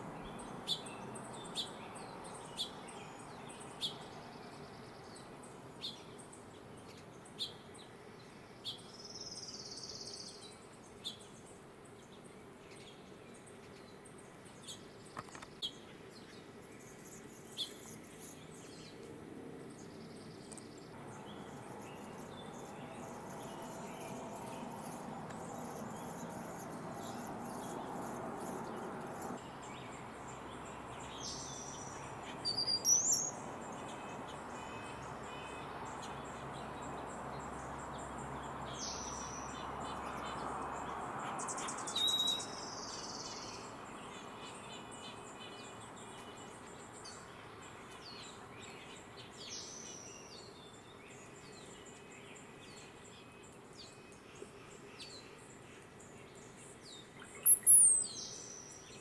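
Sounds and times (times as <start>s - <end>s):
faint outdoor hiss: 0.0s - 59.0s
hummingbird chirping: 16.7s - 19.0s, 19.7s - 55.3s, 56.0s - 59.0s.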